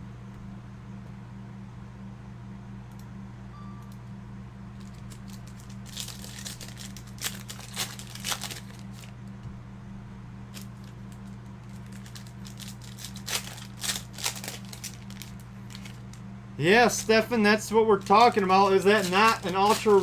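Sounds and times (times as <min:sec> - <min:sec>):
steady low hum: 0:00.0 - 0:20.0
wrappers crinkling: 0:04.8 - 0:09.3, 0:10.5 - 0:20.0.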